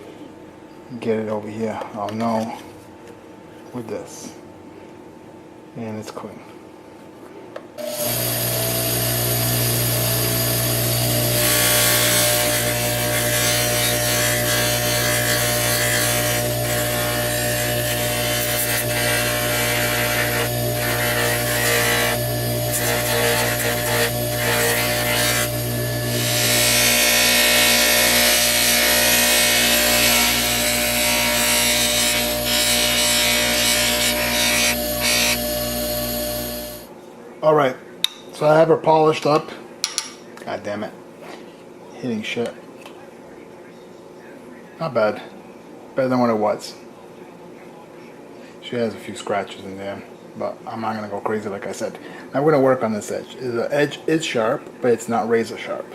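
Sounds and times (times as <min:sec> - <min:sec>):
polishing buffer motor humming: 0:07.8 - 0:36.9.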